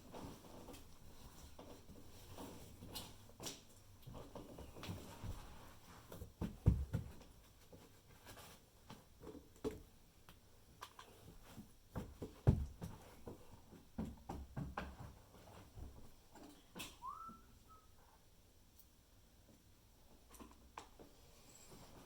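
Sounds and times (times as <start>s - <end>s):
knocks and thumps: 6.3s - 7.2s, 11.9s - 16.0s.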